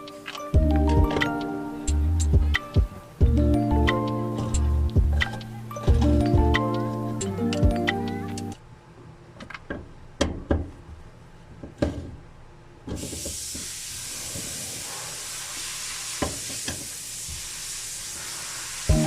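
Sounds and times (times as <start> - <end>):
compressed air hissing: 13.0 - 19.0.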